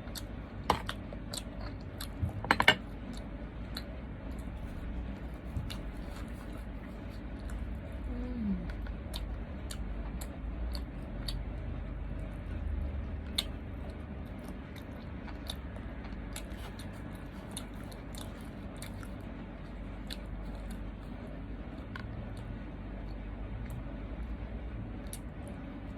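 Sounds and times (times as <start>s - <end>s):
person chewing: 0.0s - 8.1s, 8.7s - 11.5s, 13.2s - 22.6s.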